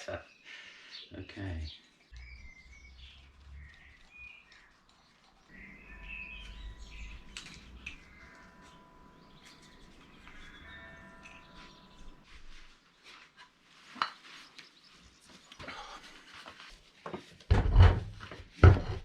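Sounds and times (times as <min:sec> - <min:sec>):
small birds chirping: 0:00.0 - 0:13.2, 0:14.1 - 0:16.4
faint low hum: 0:05.5 - 0:12.3
thin steady whine: 0:05.5 - 0:12.7.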